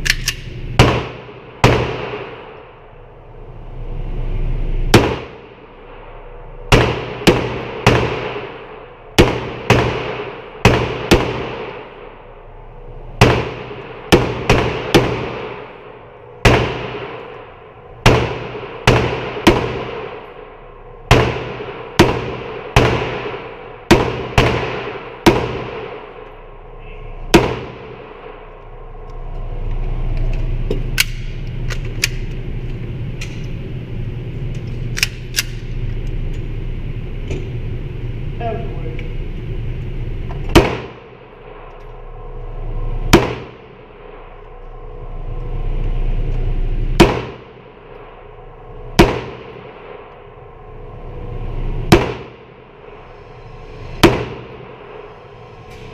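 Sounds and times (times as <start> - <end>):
steady low hum: 0.0 - 55.9
pistol shots with ringing echo: 0.1 - 2.6, 4.9 - 5.5, 6.7 - 12.1, 13.2 - 17.4, 18.0 - 20.5, 21.1 - 26.2, 27.3 - 28.4, 40.5 - 41.7, 43.1 - 44.3, 47.0 - 47.6, 49.0 - 50.1, 51.9 - 52.5, 54.0 - 54.7.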